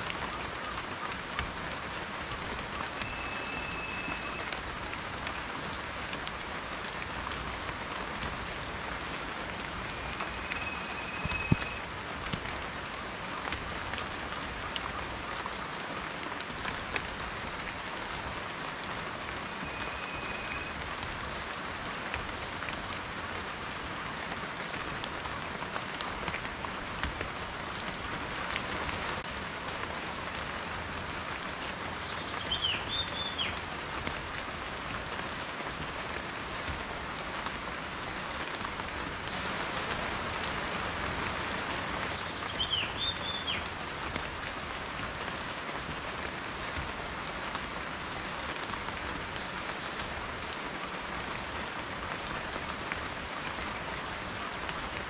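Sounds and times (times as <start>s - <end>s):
raindrops ticking on a surface: 0.0s - 55.0s
steady rain: 0.0s - 55.0s.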